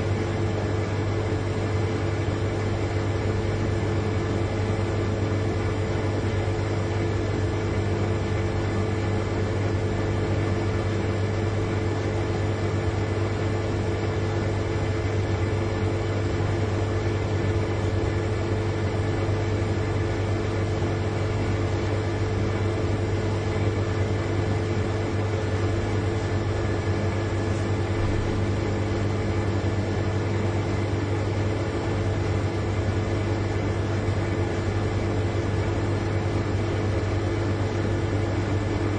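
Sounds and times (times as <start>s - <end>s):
refrigerator compressor humming: 0.0s - 38.9s.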